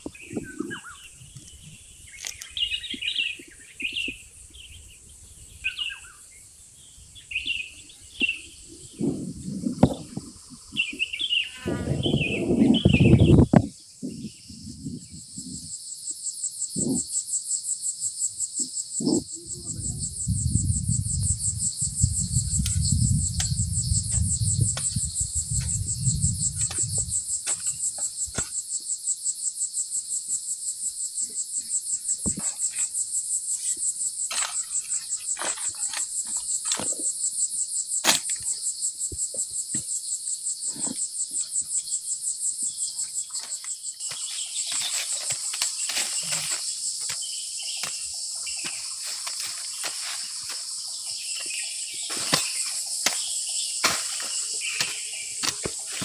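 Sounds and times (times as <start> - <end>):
insects chirring: 0.0 - 56.0
low rumble: 19.5 - 27.2.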